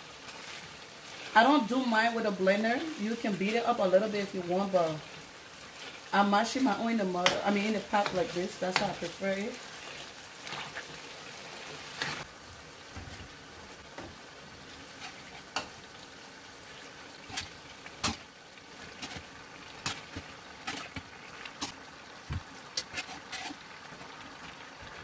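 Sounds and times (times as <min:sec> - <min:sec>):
stew sizzling in a pot: 0:00.0 - 0:25.0.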